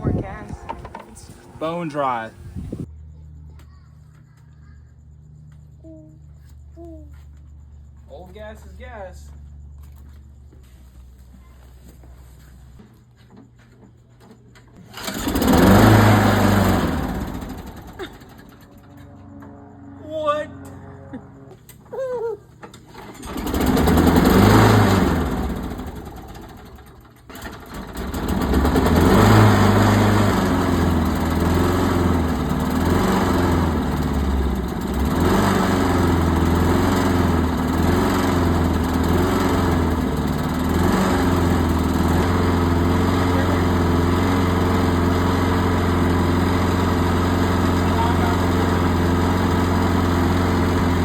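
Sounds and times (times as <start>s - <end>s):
small lawnmower engine starting: 0.0s - 2.9s, 14.8s - 21.8s, 22.6s - 51.0s.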